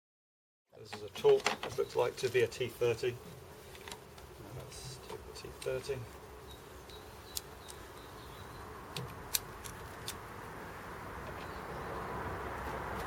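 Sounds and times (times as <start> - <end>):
background hiss and rumble: 0.7 - 13.0.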